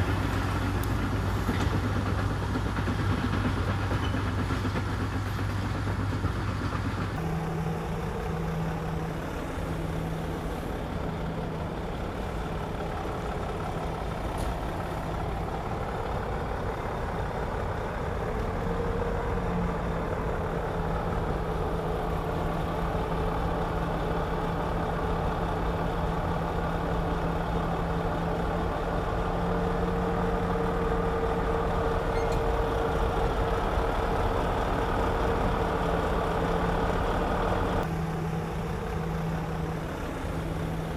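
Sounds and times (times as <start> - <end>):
bulldozer diesel engine running: 0.0 - 40.9.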